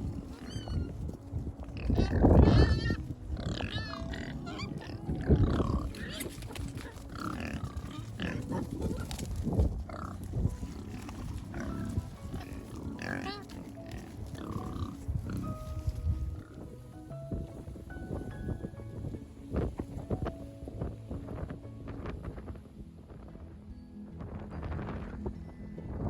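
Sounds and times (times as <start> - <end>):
pigs grunting: 0.0 - 1.0, 1.7 - 16.8
background music: 0.0 - 26.0.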